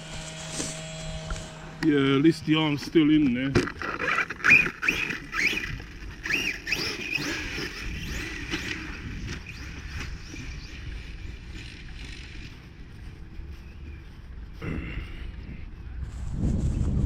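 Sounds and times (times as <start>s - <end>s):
rc car electric motor whining: 0.0s - 1.8s, 3.6s - 12.8s.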